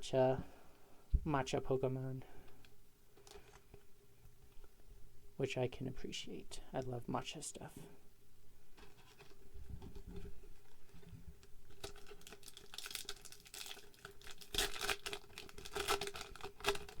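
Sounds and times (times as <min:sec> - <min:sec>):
wrapper crinkling and tearing: 0:11.4 - 0:17.0.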